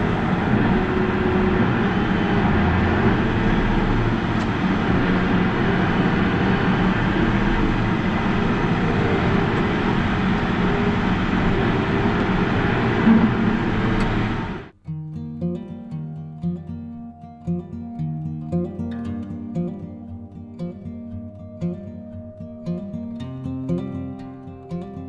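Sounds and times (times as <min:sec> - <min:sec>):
combine harvester droning: 0:00.0 - 0:14.8.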